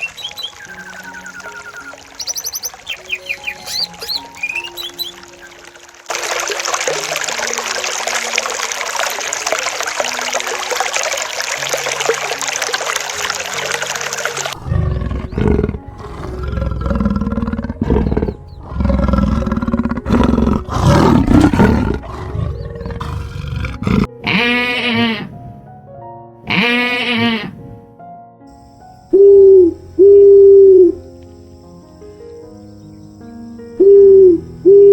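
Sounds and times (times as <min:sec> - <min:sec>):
faint background music: 0:00.0 - 0:34.9
big cat roaring and growling: 0:14.6 - 0:24.2.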